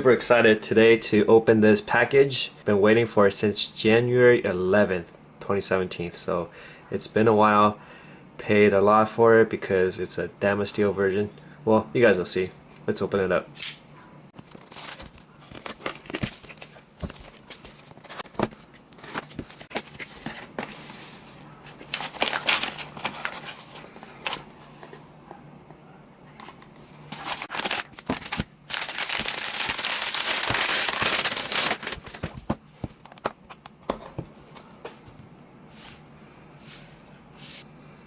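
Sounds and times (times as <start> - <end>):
packaging crinkling: 14.4 - 20.3, 21.8 - 23.6, 27.1 - 33.2.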